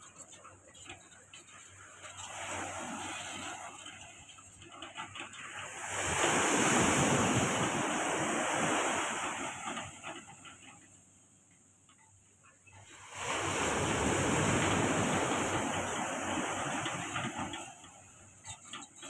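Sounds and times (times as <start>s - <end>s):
wave breaking and washing in: 1.8s - 10.9s, 12.8s - 18.4s
wind on microphone: 5.7s - 9.8s, 13.2s - 17.6s.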